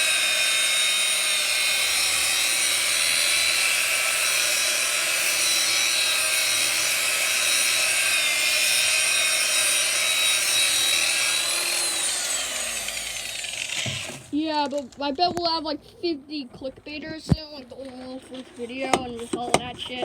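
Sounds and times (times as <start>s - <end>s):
power sander grinding concrete: 0.0s - 14.4s.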